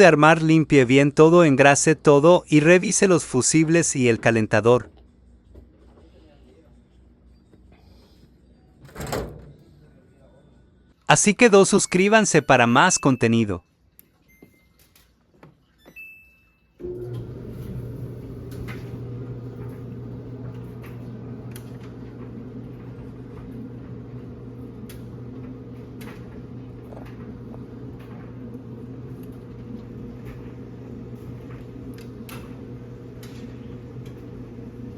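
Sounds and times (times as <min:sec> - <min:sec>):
clothes dryer humming: 0:16.8 - 0:34.9.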